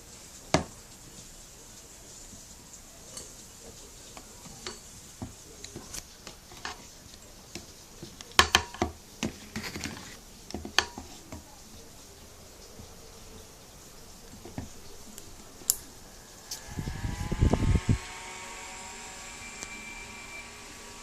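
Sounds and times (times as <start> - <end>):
desk fan clicks and metallic knocks: 7.5 - 11.5.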